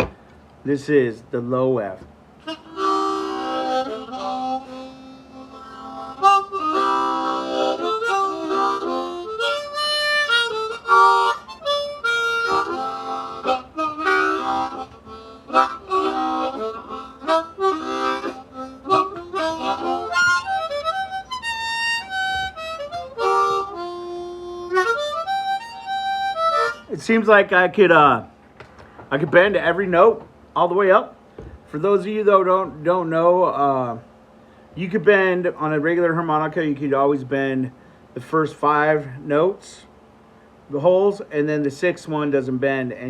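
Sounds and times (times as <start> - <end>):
harmonica playing: 2.4 - 28.1.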